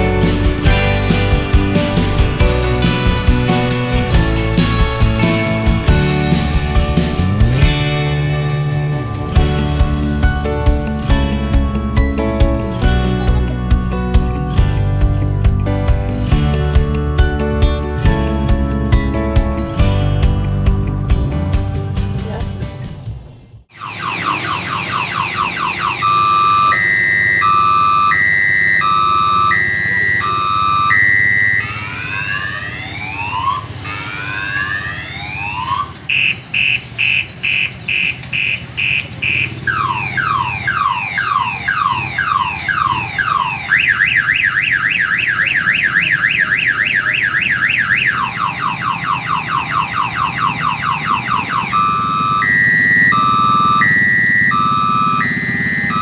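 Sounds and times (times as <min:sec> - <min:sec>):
level crossing electronic siren: 0:00.0 - 0:10.1, 0:23.7 - 0:56.0.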